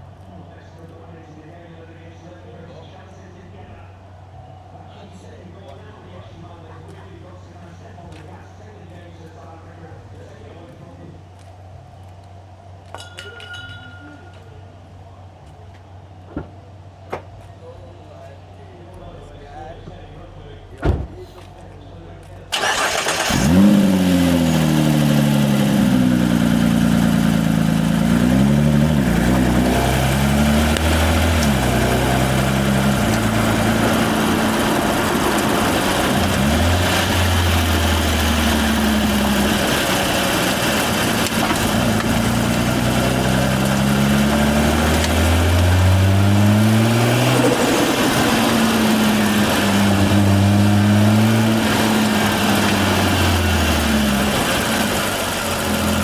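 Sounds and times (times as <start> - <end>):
turbo engine revving: 22.5 - 56.0.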